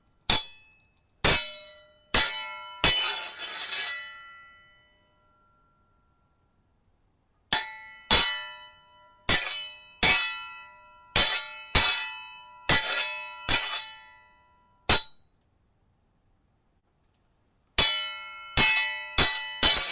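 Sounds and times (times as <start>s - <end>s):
sword blades clashing: 0.3s - 4.4s, 7.5s - 8.7s, 9.3s - 14.2s, 14.9s - 15.2s, 17.8s - 19.9s.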